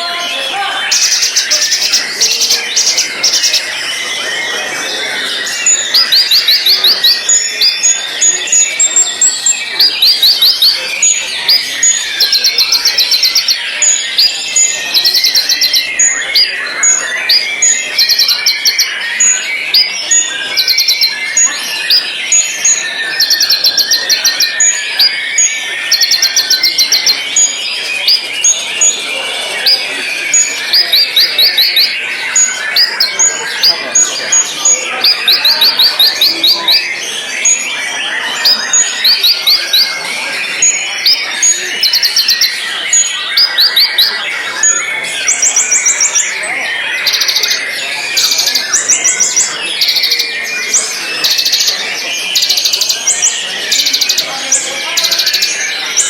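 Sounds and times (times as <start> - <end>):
bird singing rattling high notes: 0.0 - 56.0
lower bird twittering: 0.0 - 56.0.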